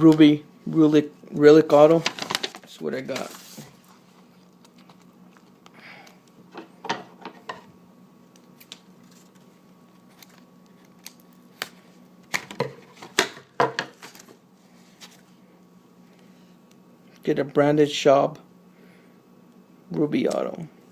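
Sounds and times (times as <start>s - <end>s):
faint steady hum: 0.0s - 20.9s
cards handled with light clicks: 8.3s - 13.3s.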